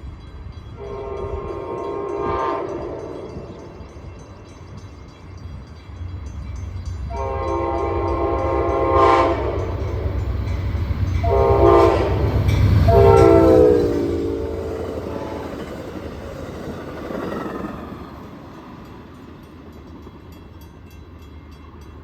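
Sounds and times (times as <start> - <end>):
train rumble: 0.0 - 22.0
locomotive horn blasts: 0.8 - 3.5, 7.1 - 10.3, 11.2 - 15.6.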